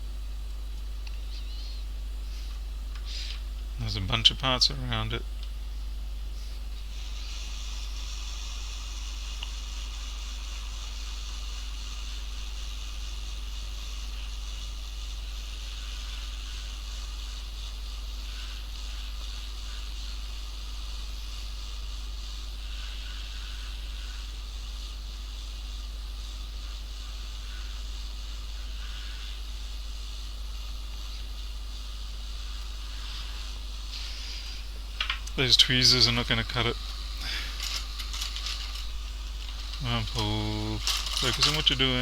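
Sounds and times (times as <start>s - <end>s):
hot-air station airflow hiss: 0.0s - 42.0s
low mains hum: 0.0s - 42.0s.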